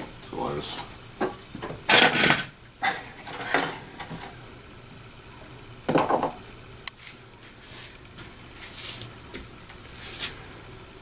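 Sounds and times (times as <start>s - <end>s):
rustling scrape: 7.0s - 9.1s, 9.9s - 10.4s.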